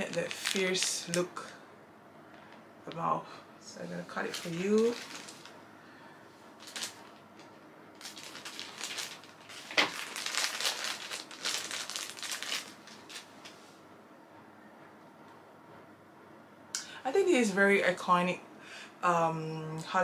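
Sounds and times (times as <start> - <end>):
plastic packaging crinkling: 0.0 - 1.4, 4.0 - 5.6, 6.6 - 13.6.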